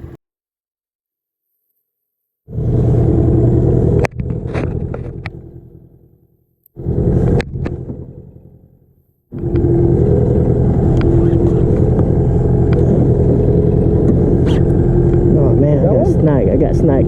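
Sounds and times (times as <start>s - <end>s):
outboard motor droning: 2.5s - 17.0s.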